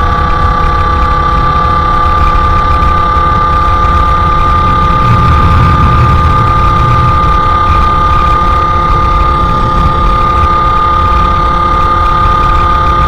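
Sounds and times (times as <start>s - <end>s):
two-stroke engine buzzing: 0.0s - 13.0s.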